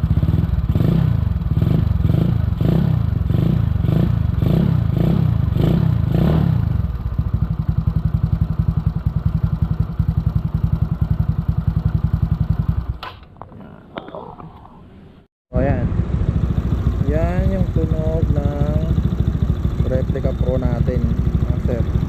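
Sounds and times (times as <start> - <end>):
scooter engine revving and idling: 0.0 - 13.0, 15.6 - 22.0.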